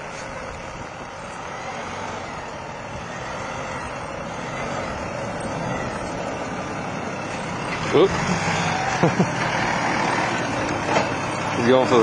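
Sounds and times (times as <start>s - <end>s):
truck engine running hard: 0.0s - 12.0s.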